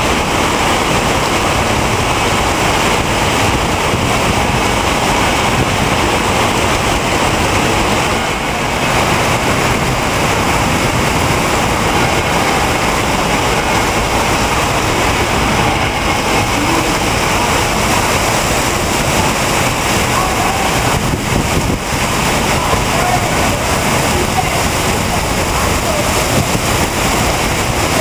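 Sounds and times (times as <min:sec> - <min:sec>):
heavy rain pouring: 0:00.0 - 0:28.0.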